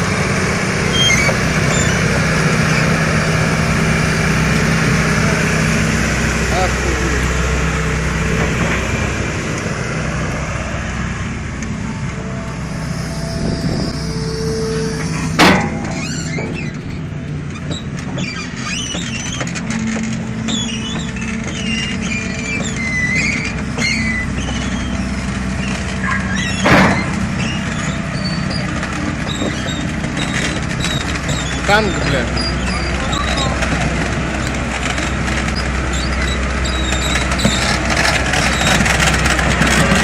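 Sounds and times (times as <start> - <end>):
heavy vehicle engine running: 0.0 - 40.0
high squeals: 0.8 - 3.2, 11.7 - 33.6, 35.5 - 38.8.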